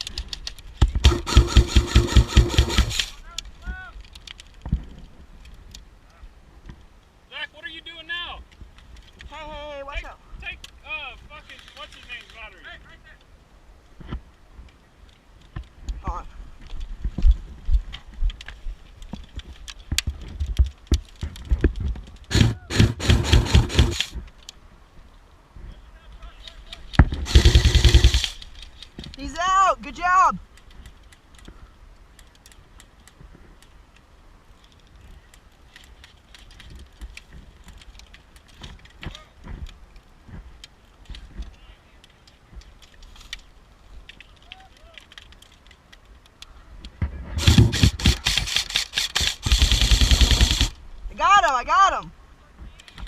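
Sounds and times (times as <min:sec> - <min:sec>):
sharp clicks and crackles: 0:00.0 - 0:07.1, 0:08.4 - 0:13.3, 0:14.0 - 0:16.0, 0:16.6 - 0:25.2, 0:26.0 - 0:29.5, 0:30.4 - 0:51.6, 0:52.6 - 0:53.0
scraping rustle: 0:10.9 - 0:12.9, 0:34.4 - 0:50.8.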